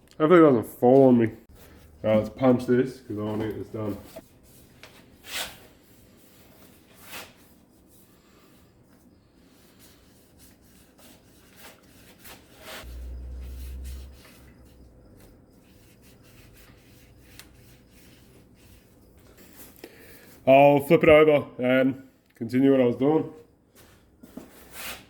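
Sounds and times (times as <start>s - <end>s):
sharp scraping strokes: 9.5s - 20.4s
scouring pad rubbing metal: 9.7s - 19.0s
low rumble: 12.8s - 15.1s.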